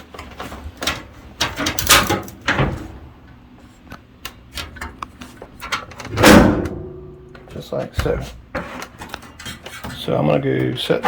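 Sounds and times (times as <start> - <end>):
dryer door clunking and scraping: 0.2 - 3.1, 5.6 - 7.0.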